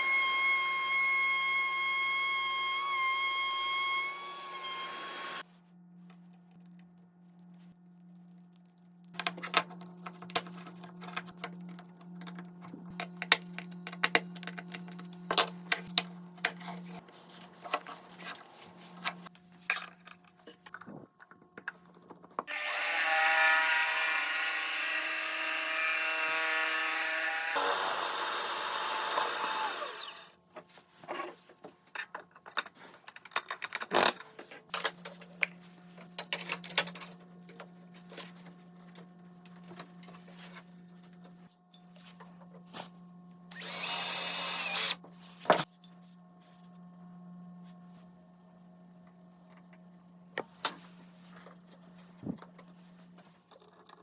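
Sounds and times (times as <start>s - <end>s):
power tool motor running: 0.0s - 5.4s, 22.5s - 30.3s, 43.5s - 45.0s
low steady hum: 5.4s - 22.2s.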